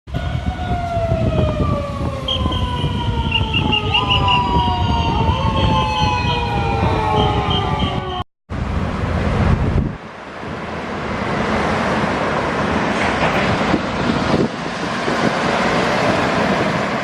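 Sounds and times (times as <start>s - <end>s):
police sirens wailing: 0.1s - 8.2s
low rumble of traffic: 0.1s - 17.0s.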